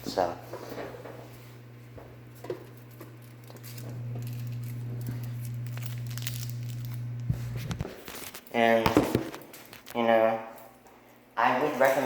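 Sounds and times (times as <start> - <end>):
plastic packaging crinkling: 2.6 - 10.0.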